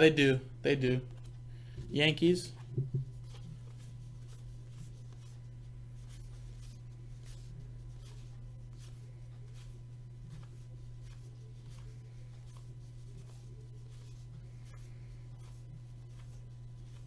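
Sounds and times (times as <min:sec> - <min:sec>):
low electrical hum: 0:00.0 - 0:17.0
cards flipped through by hand: 0:02.9 - 0:05.4, 0:06.0 - 0:17.0.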